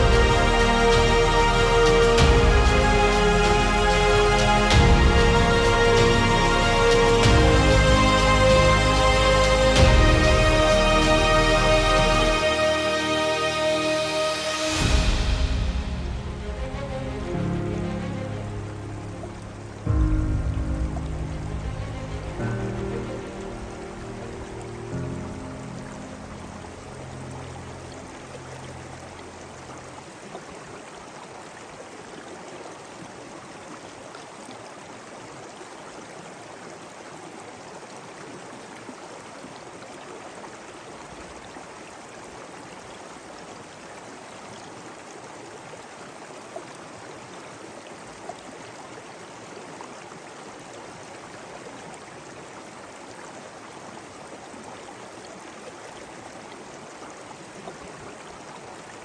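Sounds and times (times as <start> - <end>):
soft music: 0.0 - 30.1
stream rushing and babbling: 0.0 - 59.0.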